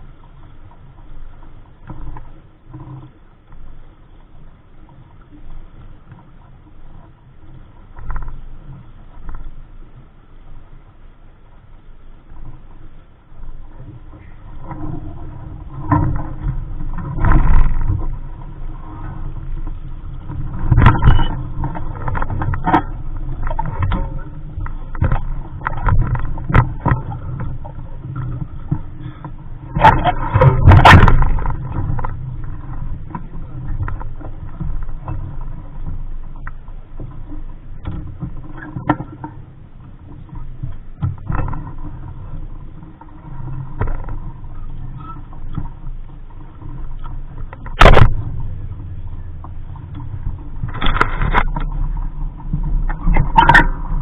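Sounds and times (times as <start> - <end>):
water splashes: 12.1 - 54.0
wind buffeting microphone: 13.6 - 39.3.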